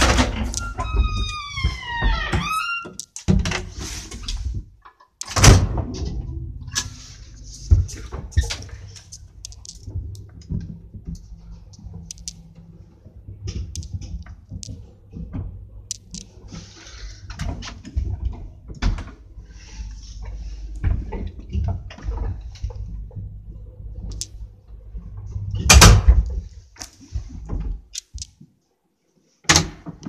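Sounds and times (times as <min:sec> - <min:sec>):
clicks and rattles: 0:13.4 - 0:16.4.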